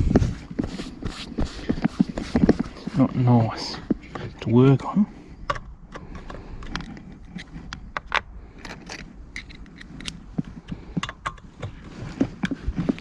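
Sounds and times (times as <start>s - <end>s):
screwdriver and screws clicking: 5.5s - 10.2s.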